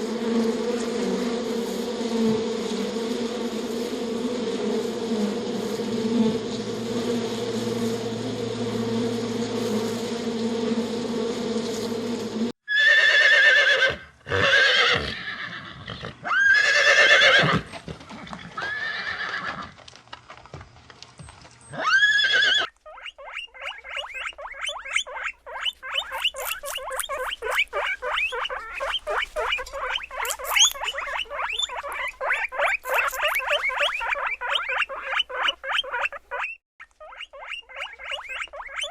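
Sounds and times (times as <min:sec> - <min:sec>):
insect buzz: 0:00.0 - 0:12.5, 0:22.9 - 0:38.9
horse neighing: 0:12.7 - 0:17.7, 0:18.6 - 0:19.7, 0:21.7 - 0:22.7
rapid high-pitched squeaking: 0:22.6 - 0:38.9.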